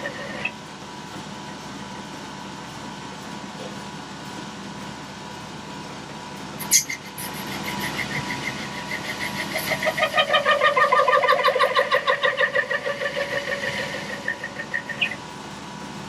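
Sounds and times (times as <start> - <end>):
pulsing pitched squeal: 6.6 - 15.4
metal lathe humming: 7.1 - 16.0.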